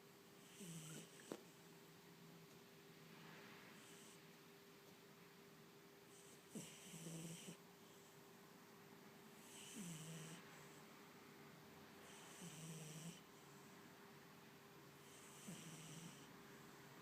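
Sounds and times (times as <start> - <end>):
cat snoring: 0.4 - 1.4, 3.7 - 4.2, 6.1 - 8.0, 9.4 - 10.8, 12.0 - 13.7, 15.0 - 16.4.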